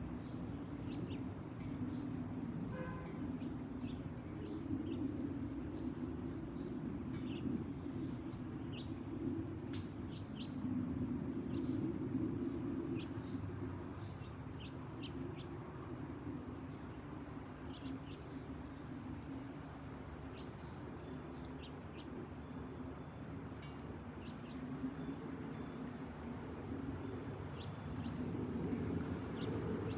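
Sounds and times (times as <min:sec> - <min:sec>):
jet engines rumbling: 0:00.0 - 0:29.9
small birds chirping: 0:00.1 - 0:02.2, 0:12.9 - 0:15.6, 0:16.5 - 0:29.9.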